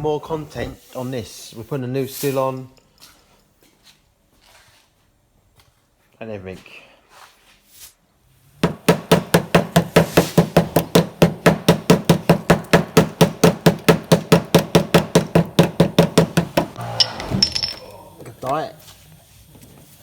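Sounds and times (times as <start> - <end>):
rapid hammer-like knocks: 8.6 - 16.8.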